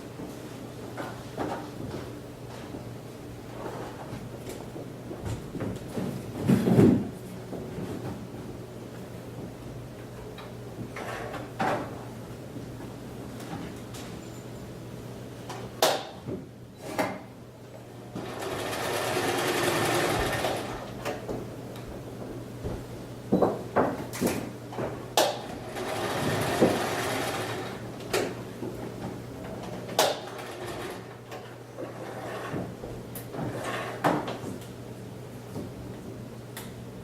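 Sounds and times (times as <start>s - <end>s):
sewing machine running: 18.2s - 21.0s, 25.6s - 27.8s, 30.3s - 31.1s.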